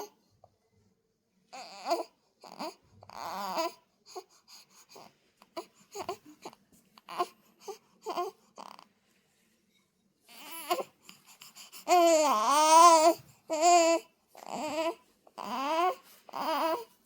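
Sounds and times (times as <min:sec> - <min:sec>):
baby crying and squeaking: 0:11.9 - 0:16.9.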